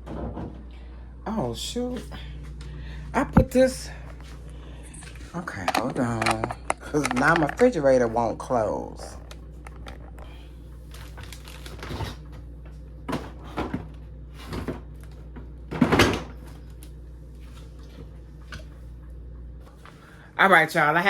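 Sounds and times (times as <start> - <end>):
fridge shelf knocks and clunks: 0.0 - 0.7, 15.7 - 16.5.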